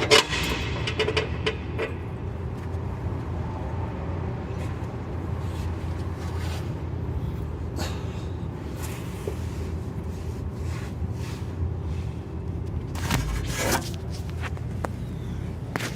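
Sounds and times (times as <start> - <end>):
car road noise rumble: 1.2 - 7.7.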